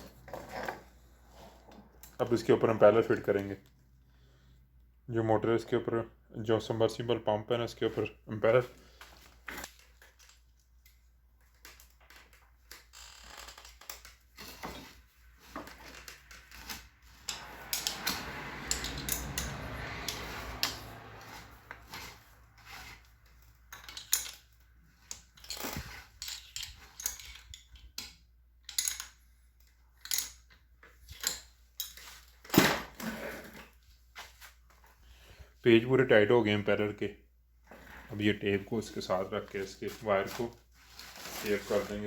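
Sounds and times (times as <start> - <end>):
metal parts clinking: 15.8 - 22.2, 23.2 - 32.7.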